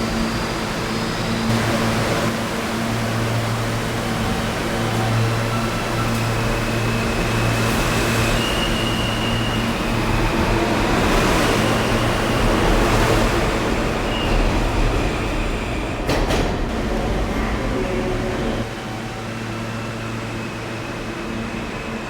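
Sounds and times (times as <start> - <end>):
subway train rumbling: 0.0 - 22.0.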